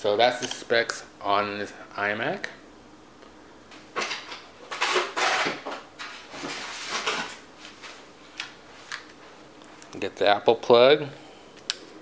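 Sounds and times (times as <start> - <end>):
packaging rustling and scraping: 4.0 - 8.0.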